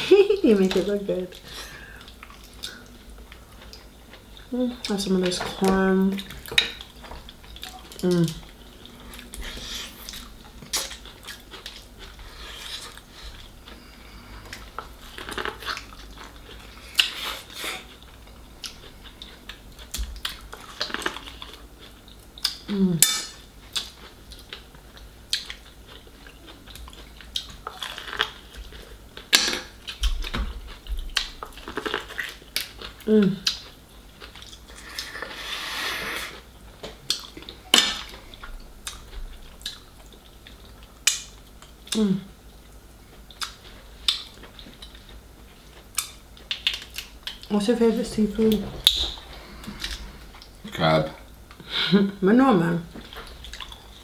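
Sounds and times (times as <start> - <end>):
chewing and biting: 6.1 - 22.7, 23.7 - 35.4, 36.3 - 42.0, 43.1 - 47.5, 53.0 - 54.0
utensils clinking on dishes: 23.0 - 23.4.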